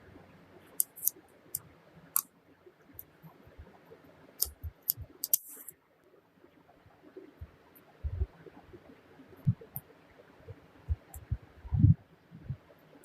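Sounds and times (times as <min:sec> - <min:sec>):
short hiss: 0:05.2 - 0:05.7.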